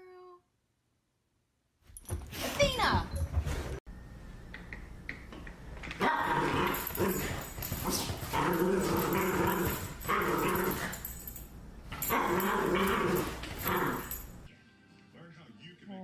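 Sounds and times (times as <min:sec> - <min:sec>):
dog growly barking: 0:06.0 - 0:07.3, 0:07.9 - 0:11.0, 0:12.0 - 0:14.2.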